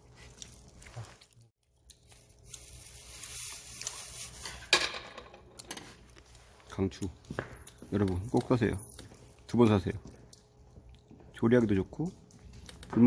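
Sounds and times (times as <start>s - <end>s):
stove fire hissing: 2.5s - 4.8s.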